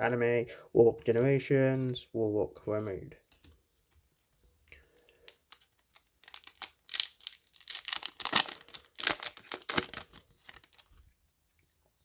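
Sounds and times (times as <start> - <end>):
foil wrapper tearing and crinkling: 5.2 - 11.0.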